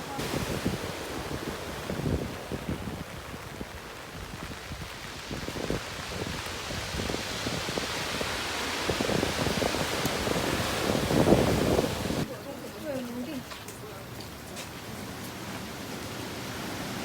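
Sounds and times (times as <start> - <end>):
wind buffeting microphone: 0.0 - 12.3
steady outdoor hiss: 0.0 - 17.0.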